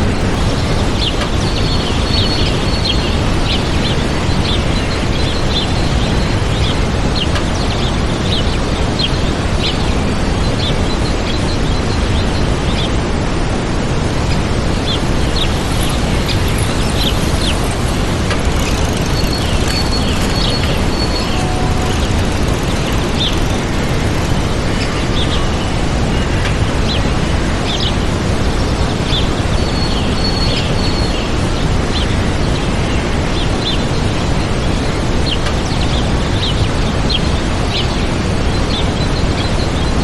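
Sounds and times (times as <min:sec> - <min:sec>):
small birds chirping: 0:00.0 - 0:13.0, 0:14.3 - 0:40.0
waterfall rushing: 0:00.0 - 0:29.7.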